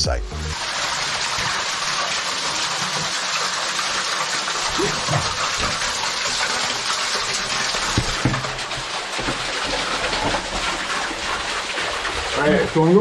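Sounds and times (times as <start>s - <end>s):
waterfall rushing: 4.5s - 7.1s.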